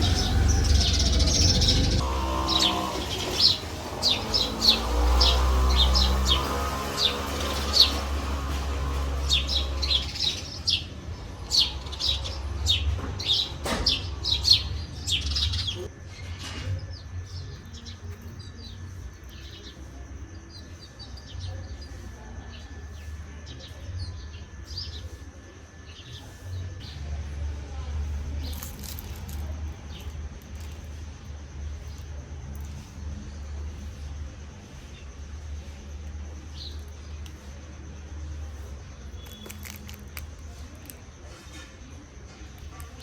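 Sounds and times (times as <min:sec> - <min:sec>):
low rumble: 0:00.0 - 0:05.8
small birds chirping: 0:00.0 - 0:43.0.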